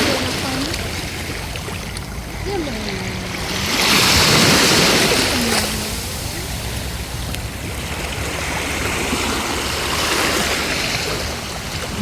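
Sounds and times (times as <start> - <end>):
surf breaking on beach: 2.4 - 12.0.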